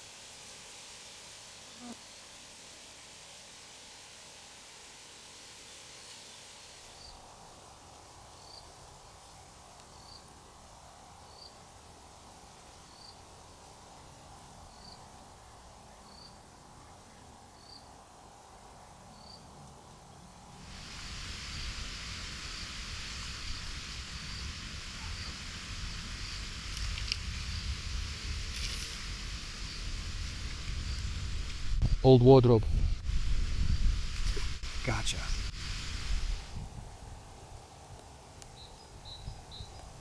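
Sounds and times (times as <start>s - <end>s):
steady hiss with low rumble: 0.0s - 40.0s
cricket chirping: 8.1s - 11.7s, 12.6s - 13.5s, 14.7s - 16.6s, 17.5s - 18.0s, 19.1s - 19.5s, 38.4s - 40.0s.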